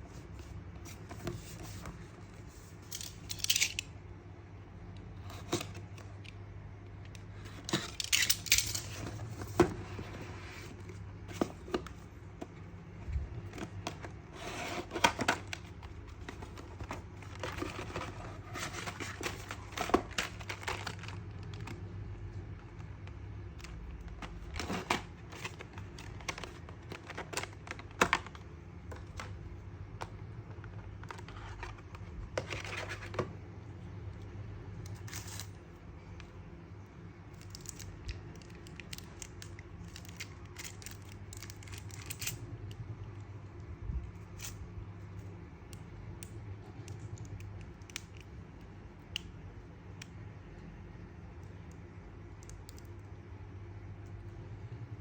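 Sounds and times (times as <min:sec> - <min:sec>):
plastic and cardboard rustling: 0:00.0 - 0:03.7, 0:07.3 - 0:21.9, 0:23.0 - 0:33.4.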